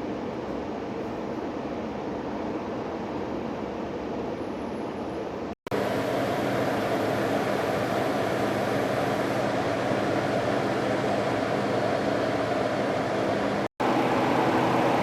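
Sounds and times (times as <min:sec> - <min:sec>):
radiator cooling fans running: 0:05.7 - 0:15.0.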